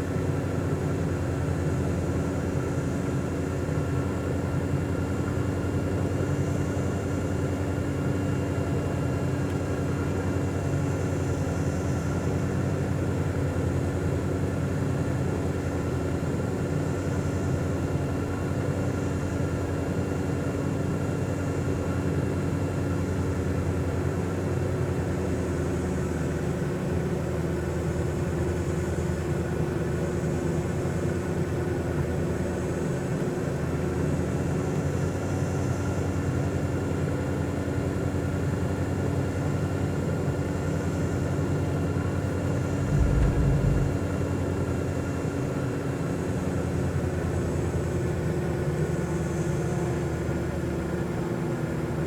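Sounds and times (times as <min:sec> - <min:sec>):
steady mechanical hum: 0:00.0 - 0:44.7.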